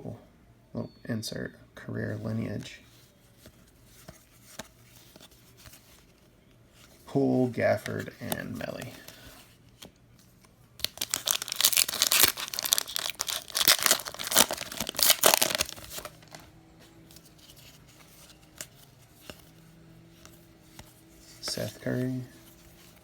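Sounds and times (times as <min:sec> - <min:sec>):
cards being handled: 0:02.6 - 0:23.0
wrapper tearing and crinkling: 0:10.8 - 0:16.4.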